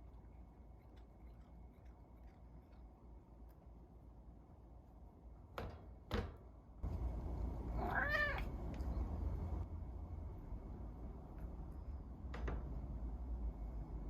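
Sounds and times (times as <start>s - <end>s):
cat meowing: 7.8s - 8.5s.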